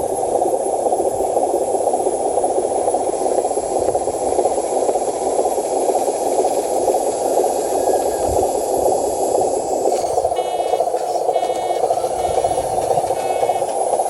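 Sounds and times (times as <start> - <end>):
rushing mechanical noise: 0.0 - 14.0
toy truck reversing beeper: 9.9 - 14.0.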